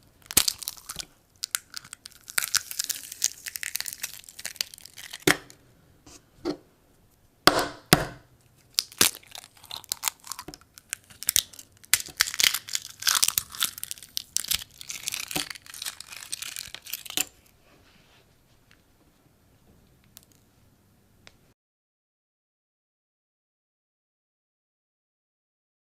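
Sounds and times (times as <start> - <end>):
eggshell cracking and crunching: 0.0 - 5.6, 8.6 - 17.4.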